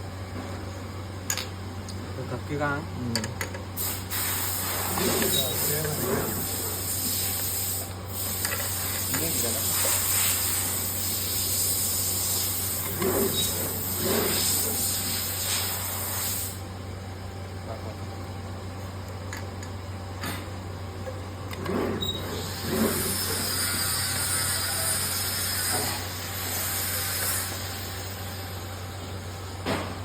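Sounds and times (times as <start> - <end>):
machine hissing: 3.8 - 16.6, 21.8 - 28.7.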